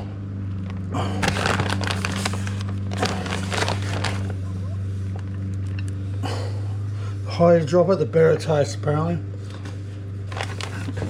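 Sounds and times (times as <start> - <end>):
steady low hum: 0.0 - 11.0
pizza toppings rustling and tapping: 1.2 - 4.8, 10.3 - 11.0.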